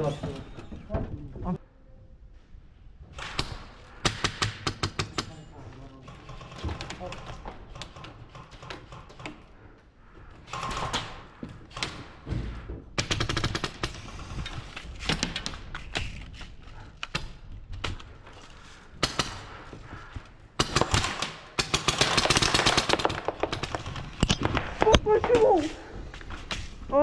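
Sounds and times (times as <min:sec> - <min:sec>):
airsoft guns firing: 0:03.1 - 0:05.3, 0:19.0 - 0:19.7, 0:20.6 - 0:25.4.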